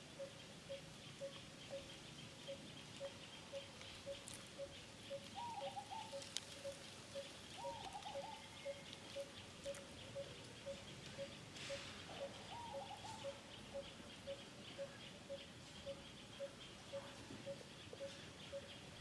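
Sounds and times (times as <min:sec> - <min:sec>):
wavering bird calls: 0:00.0 - 0:19.0.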